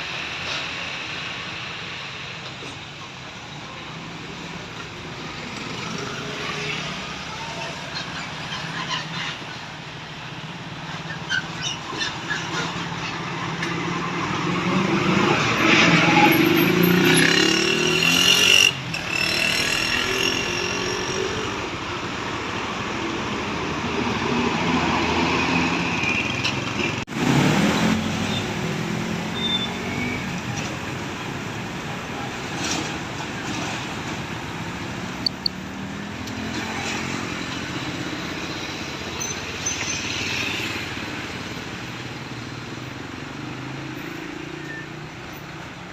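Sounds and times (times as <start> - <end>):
road traffic passing: 0.0 - 45.9.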